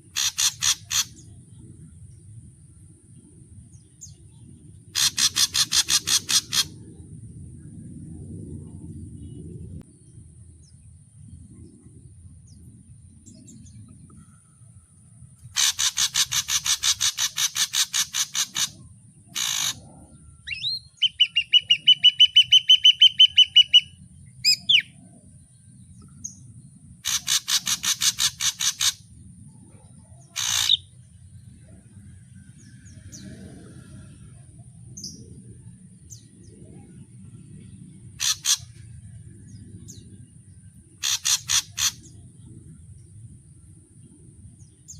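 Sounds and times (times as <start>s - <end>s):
bird harsh chattering: 0.0s - 1.2s, 4.9s - 6.7s, 15.5s - 19.8s, 20.5s - 23.9s, 27.0s - 29.0s, 30.4s - 30.8s, 38.2s - 38.8s, 41.0s - 42.1s
bird sharp calls: 0.0s - 1.4s, 4.9s - 6.8s, 15.5s - 19.8s, 20.4s - 25.0s, 27.0s - 29.0s, 30.2s - 30.9s, 38.2s - 38.8s, 41.0s - 42.2s
bird whistled notes: 20.5s - 24.9s.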